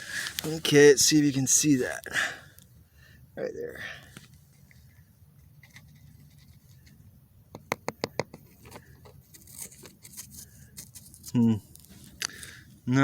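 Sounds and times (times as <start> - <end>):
faint scratching and clicking: 4.1 - 7.1, 8.1 - 12.5.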